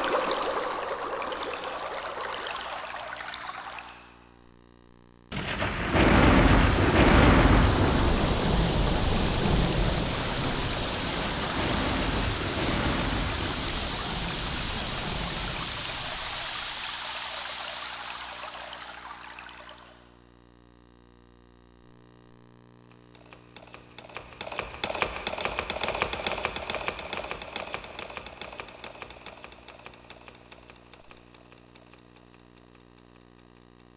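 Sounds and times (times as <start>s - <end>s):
synthesized rain and thunder noise: 0.0s - 2.8s, 5.3s - 19.2s, 23.2s - 32.0s.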